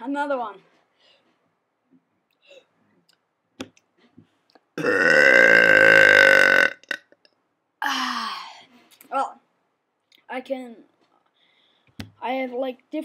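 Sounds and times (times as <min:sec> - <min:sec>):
long loud burp: 0:04.8 - 0:07.1.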